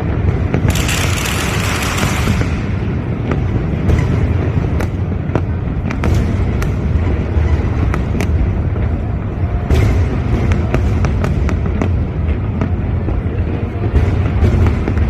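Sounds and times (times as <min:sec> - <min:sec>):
fireworks bangs and cracks: 0:00.0 - 0:15.0.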